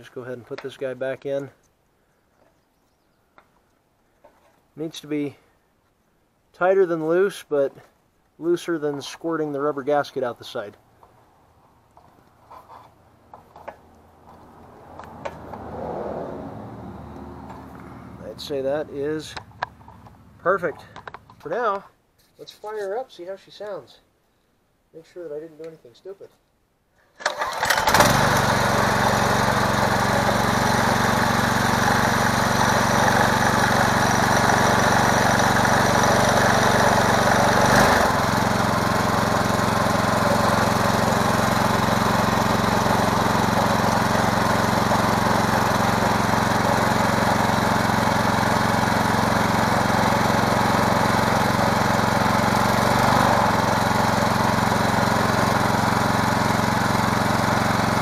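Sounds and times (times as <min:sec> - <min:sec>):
small engine idling: 0:27.3 - 0:58.0.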